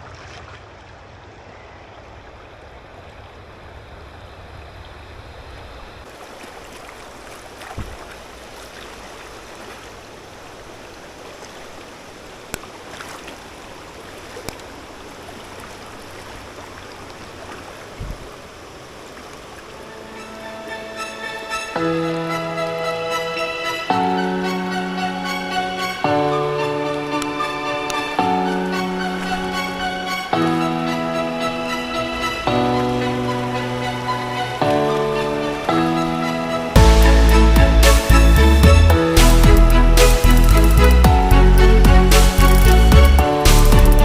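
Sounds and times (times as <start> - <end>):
stream water flowing: 0.0 - 44.0.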